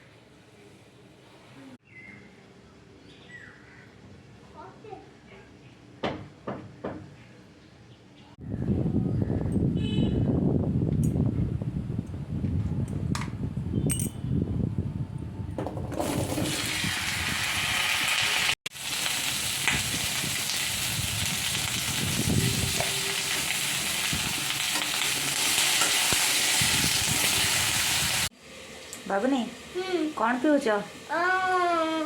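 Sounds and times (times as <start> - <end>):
vegetables sizzling in hot oil: 16.0 - 32.0.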